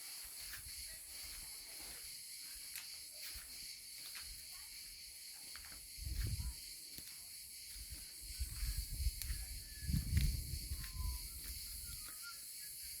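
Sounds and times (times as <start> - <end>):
crickets chirping: 0.0 - 13.0
microphone rumble: 8.7 - 11.2.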